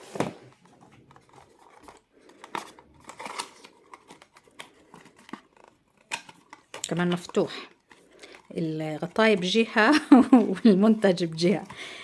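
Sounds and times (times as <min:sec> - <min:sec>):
crinkling rustles: 0:00.0 - 0:11.8.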